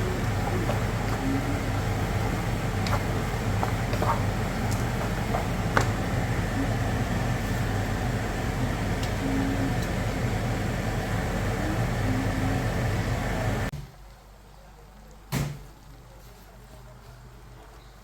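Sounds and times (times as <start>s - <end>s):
electric motor hum: 0.0s - 13.7s.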